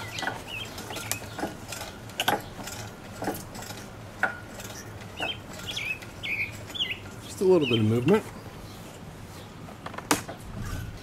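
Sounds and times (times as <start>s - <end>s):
wooden fence creaking and knocking: 0.0s - 7.2s, 9.6s - 11.0s.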